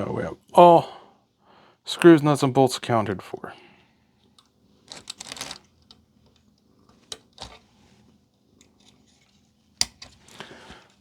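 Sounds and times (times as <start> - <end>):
parts rattling: 4.9 - 5.8.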